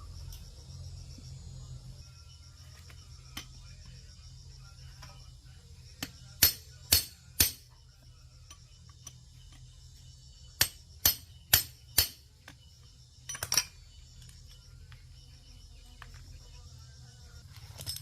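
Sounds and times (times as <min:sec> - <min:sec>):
hammer striking metal: 0:06.4 - 0:07.7, 0:10.6 - 0:12.2.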